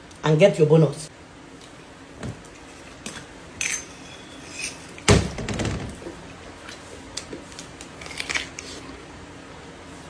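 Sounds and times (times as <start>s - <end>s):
dishes clinking: 3.6s - 5.1s.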